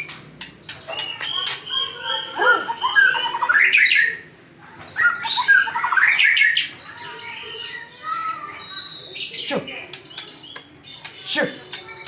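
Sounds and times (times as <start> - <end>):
songbird singing whistled phrases: 0.9 - 4.2, 5.0 - 6.8.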